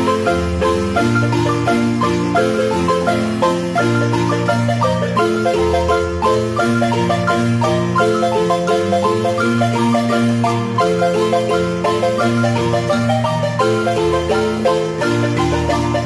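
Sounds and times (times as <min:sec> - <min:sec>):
marimba music: 0:00.0 - 0:16.0.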